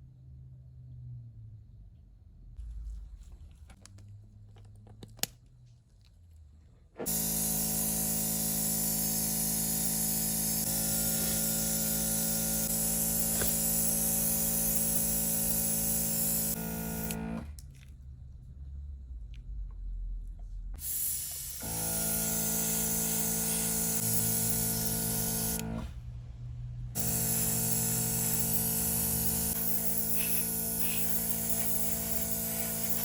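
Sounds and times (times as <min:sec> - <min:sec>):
loud spraying hiss: 0:10.5 - 0:16.6, 0:20.8 - 0:25.7, 0:27.0 - 0:33.0.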